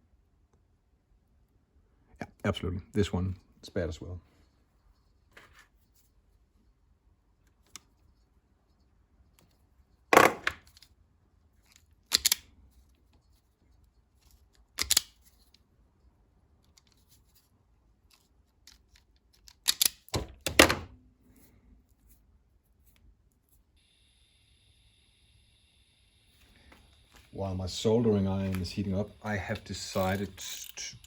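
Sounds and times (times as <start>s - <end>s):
hand tools clicking and knocking: 29.5s - 31.0s.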